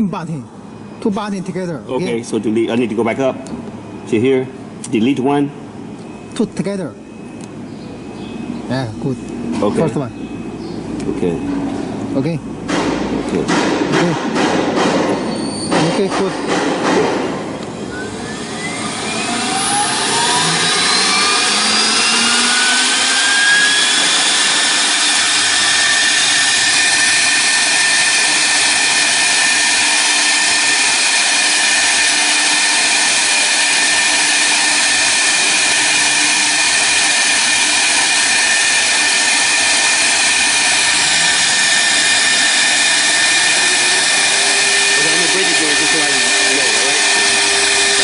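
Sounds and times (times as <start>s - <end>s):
router spindle whine: 17.6s - 48.0s.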